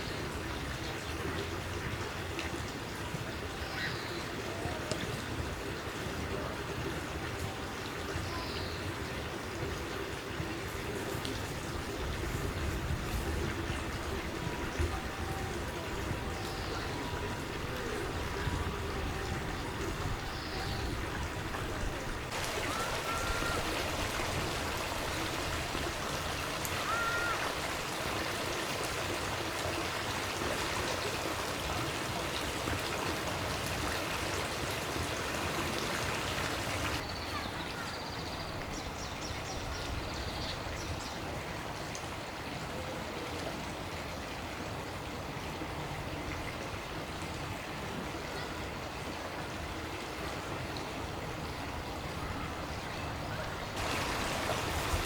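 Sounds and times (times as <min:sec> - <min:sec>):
flowing water: 0:00.0 - 0:55.0
faint bird calls: 0:22.3 - 0:28.4.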